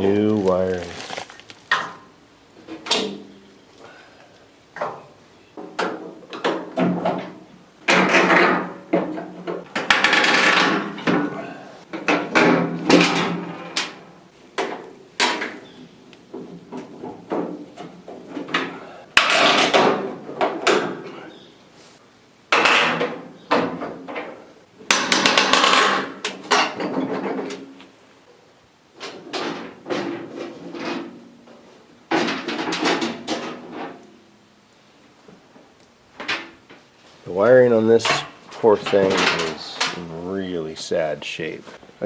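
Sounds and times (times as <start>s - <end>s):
scraping: 0.0s - 2.0s
rustling: 0.0s - 2.1s.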